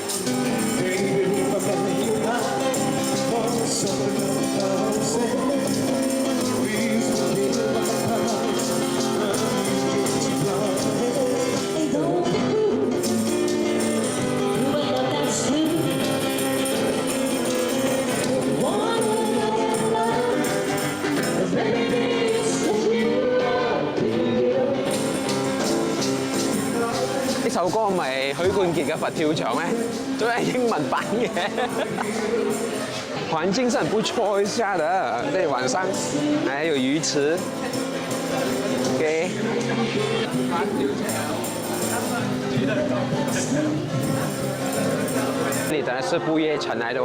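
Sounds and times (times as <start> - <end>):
person singing: 0.0 - 33.3
live band playing: 0.0 - 45.8.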